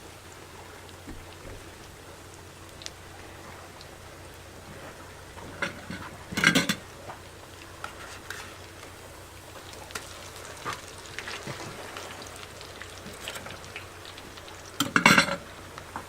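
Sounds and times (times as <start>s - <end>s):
utensil clattering against pan: 5.6s - 6.8s, 14.8s - 15.4s
patties sizzling in a pan: 7.9s - 15.4s.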